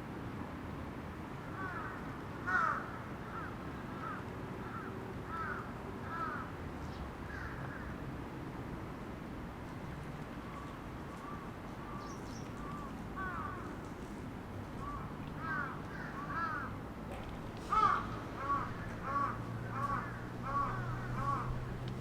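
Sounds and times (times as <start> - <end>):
bird calling: 10.4 - 14.0, 14.7 - 16.8, 17.6 - 21.8.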